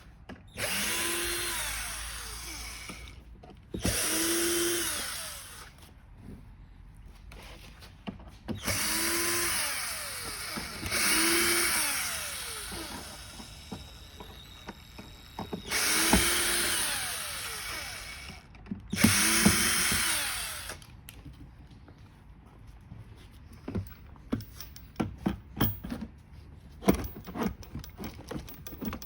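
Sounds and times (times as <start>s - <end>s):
cordless drill driving screws: 0.5s - 3.2s, 3.8s - 5.8s, 8.6s - 20.9s.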